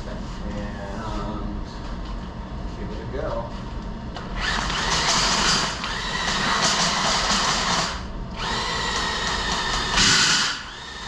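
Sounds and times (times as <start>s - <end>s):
drill spinning: 4.4s - 11.0s.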